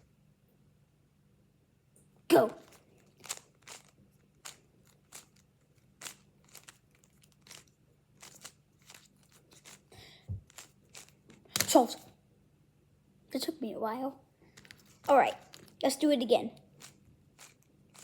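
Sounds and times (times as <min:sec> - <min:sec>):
puzzle cube clicking: 0:02.6 - 0:12.0, 0:16.8 - 0:18.0.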